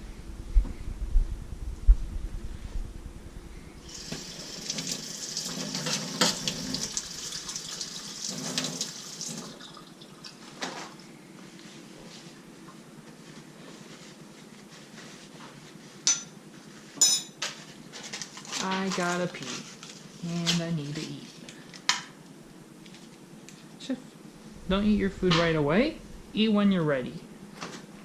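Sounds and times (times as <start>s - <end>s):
water running from a tap: 3.8s - 10.3s.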